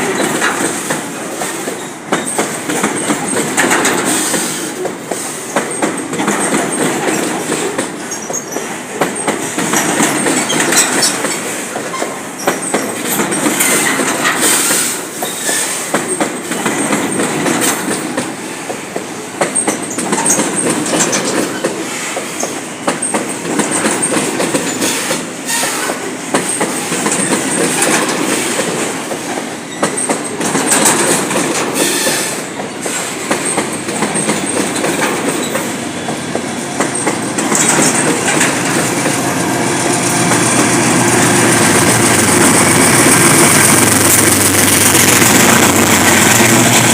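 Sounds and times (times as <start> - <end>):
train wheels clacking on rail joints: 0.0 - 46.9
high wheel squeal: 24.8 - 26.0.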